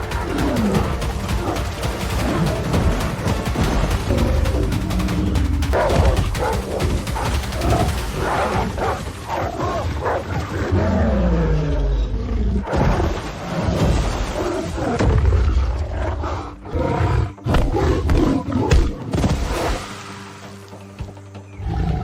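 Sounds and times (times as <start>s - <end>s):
big cat roaring and snarling: 7.6s - 19.1s.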